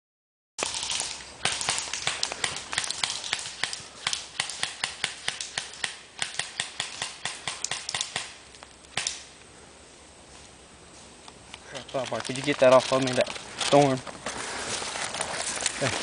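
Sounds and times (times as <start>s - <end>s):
sharp clicks and snaps: 0.7s - 9.3s.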